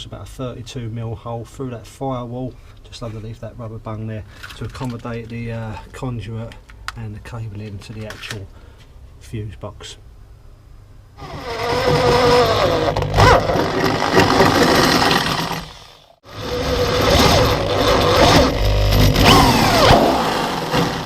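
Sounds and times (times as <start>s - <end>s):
power drill bit squealing: 11.2s - 15.8s.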